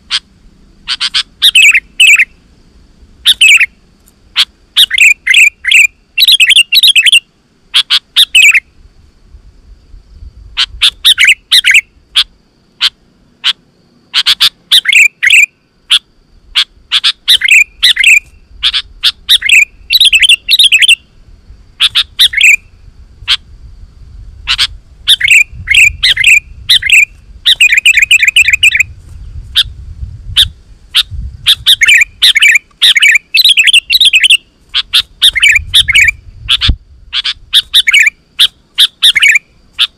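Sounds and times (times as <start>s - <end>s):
bird chattering song: 0.0s - 2.4s, 3.2s - 8.7s, 10.5s - 21.2s, 21.8s - 23.4s, 24.4s - 39.9s
faint low rumble: 21.0s - 32.2s.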